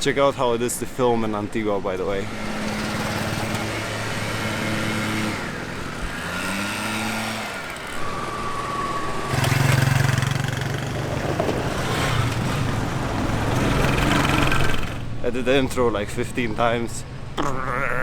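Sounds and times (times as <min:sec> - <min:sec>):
vehicle engines running: 0:00.0 - 0:17.4
loud low engine: 0:02.0 - 0:15.2.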